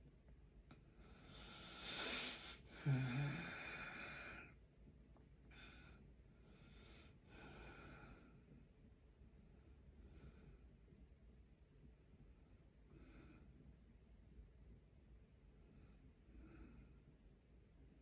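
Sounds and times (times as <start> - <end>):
man snoring: 1.9 - 4.5.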